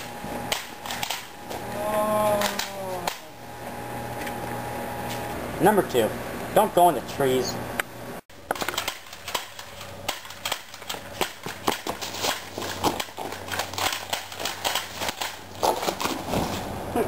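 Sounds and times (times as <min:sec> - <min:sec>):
sharp snaps and pops: 0:08.4 - 0:16.2.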